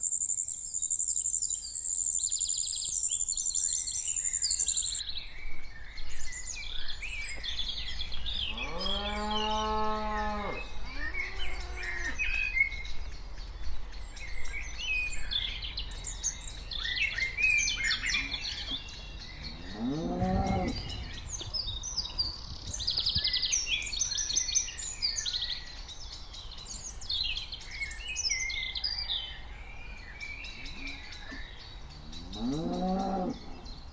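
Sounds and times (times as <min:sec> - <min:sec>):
birds chirping: 0:05.0 - 0:27.6, 0:28.4 - 0:33.9
cows mooing: 0:08.4 - 0:12.2, 0:15.5 - 0:22.3, 0:30.4 - 0:33.9.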